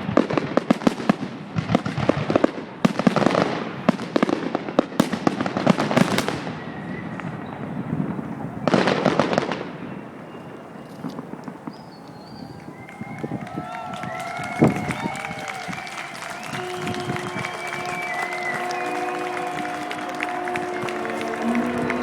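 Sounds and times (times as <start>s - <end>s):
fireworks crackling and banging: 0.0s - 22.0s.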